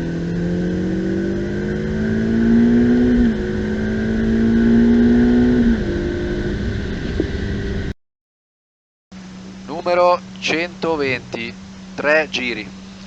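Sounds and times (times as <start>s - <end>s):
car engine accelerating: 0.0s - 7.9s, 9.2s - 13.0s.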